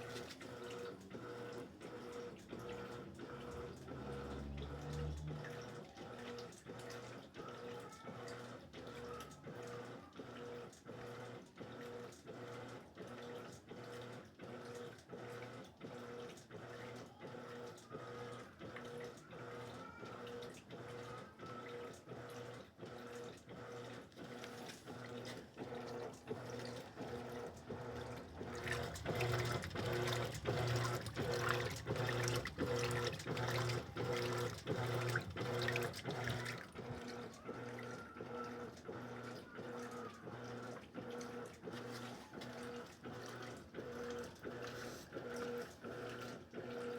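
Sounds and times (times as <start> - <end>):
washing machine water sloshing: 0.0 - 19.6, 20.2 - 46.9
motor hum: 17.6 - 46.9.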